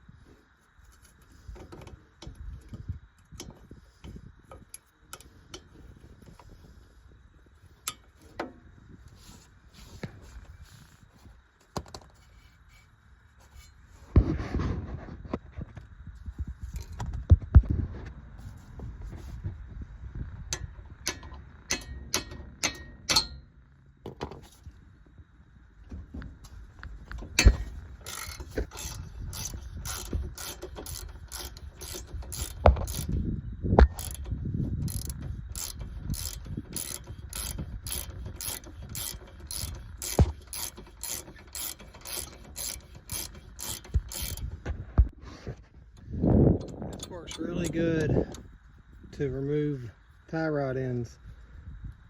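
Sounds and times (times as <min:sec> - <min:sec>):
hand ratchet clicking: 0:20.6 - 0:23.4, 0:27.1 - 0:33.2, 0:33.8 - 0:44.7
irregular clicks and knocks: 0:20.6 - 0:23.4, 0:33.8 - 0:45.1.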